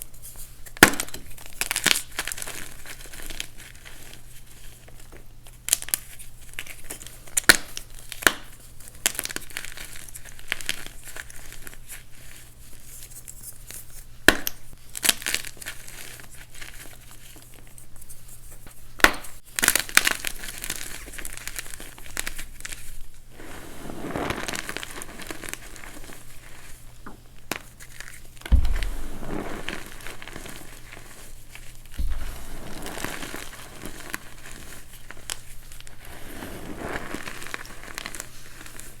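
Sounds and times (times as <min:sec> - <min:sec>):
chalk crunching by hand: 0:27.8 - 0:38.9
heavy thuds: 0:28.5 - 0:30.8, 0:31.9 - 0:33.6.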